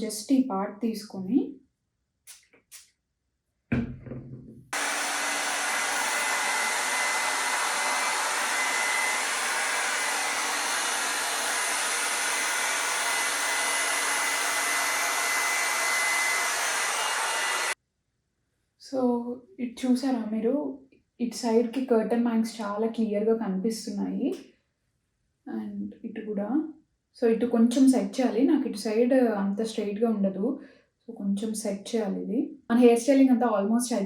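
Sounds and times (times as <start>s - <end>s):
hair dryer brush blowing air: 4.8s - 17.8s.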